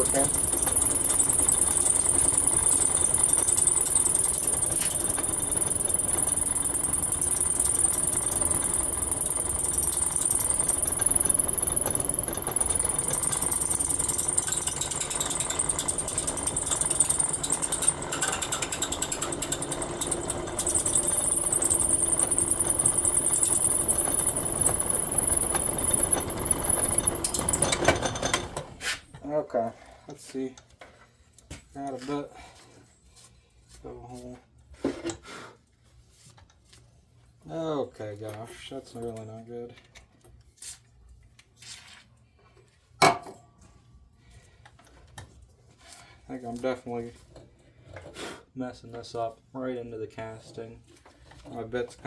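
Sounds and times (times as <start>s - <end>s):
drill bit squealing on metal: 0.0s - 28.5s.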